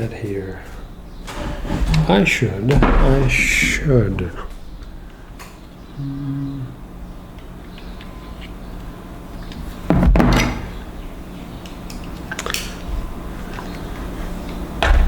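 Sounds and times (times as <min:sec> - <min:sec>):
knock and rustle: 0:02.7 - 0:04.8.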